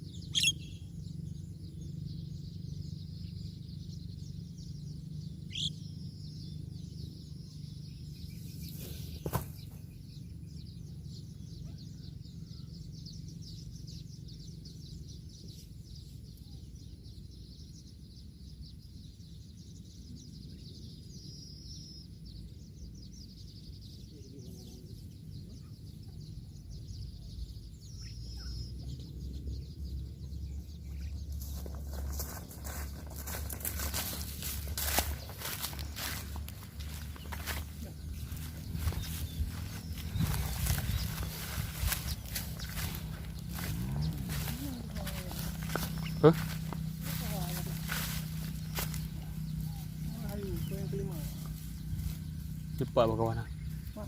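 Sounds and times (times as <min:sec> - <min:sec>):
sharp bird calls: 0:00.0 - 0:02.4, 0:04.0 - 0:06.5, 0:23.1 - 0:54.0
birds chirping: 0:00.0 - 0:54.0.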